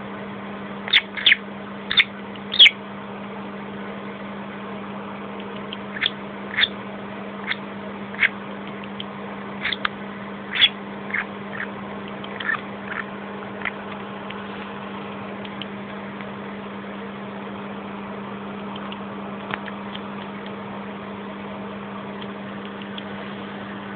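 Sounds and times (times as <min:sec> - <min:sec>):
low mechanical hum: 0:00.0 - 0:23.9
bird squeaking: 0:00.9 - 0:02.8, 0:05.9 - 0:06.8, 0:07.4 - 0:08.4, 0:09.6 - 0:09.9, 0:10.5 - 0:11.7, 0:12.3 - 0:13.8.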